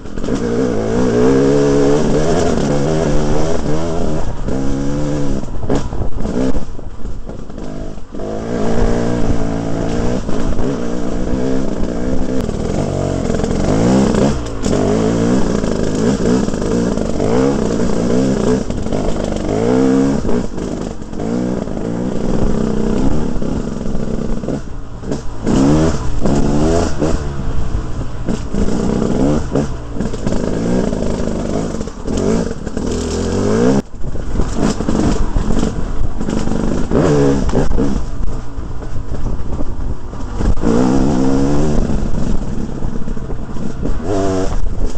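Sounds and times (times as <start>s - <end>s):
dirt bike engine revving: 0.0s - 44.9s.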